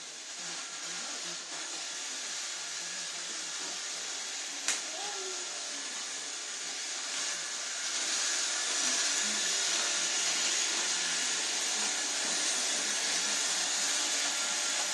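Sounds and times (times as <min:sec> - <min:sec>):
robot vacuum cleaner whirring: 0:00.0 - 0:14.9.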